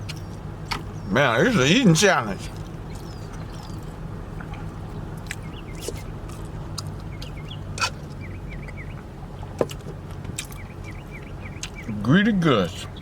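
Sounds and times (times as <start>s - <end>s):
person chewing and smacking: 0.0s - 1.6s, 2.4s - 11.9s
steady low hum: 0.0s - 13.0s
wet mouth clicks: 3.7s - 7.1s.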